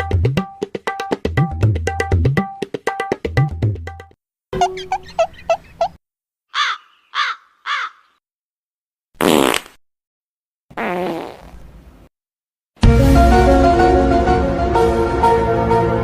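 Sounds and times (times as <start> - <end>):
crow caws falling in pitch: 6.5 - 8.1
fart sound: 9.2 - 9.8, 10.7 - 11.7.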